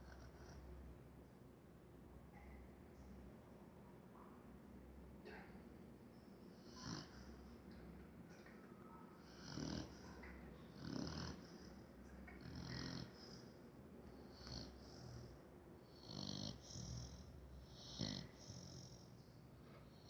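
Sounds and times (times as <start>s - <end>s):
dog snoring: 6.6s - 7.4s, 9.2s - 13.6s, 14.2s - 19.1s.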